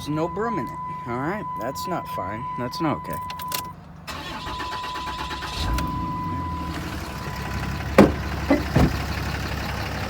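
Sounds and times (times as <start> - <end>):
truck engine idling: 3.8 - 10.0
sharp knocks: 8.0 - 9.1.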